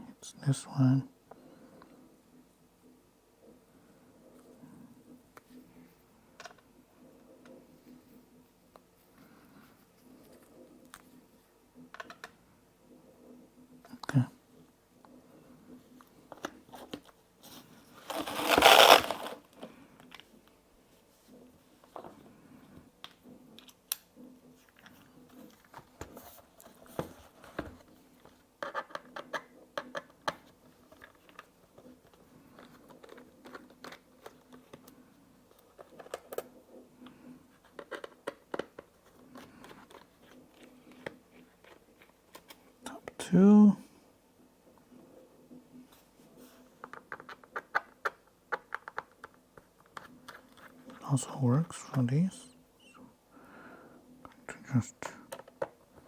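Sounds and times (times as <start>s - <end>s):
rustling scrape: 17.4s - 19.4s.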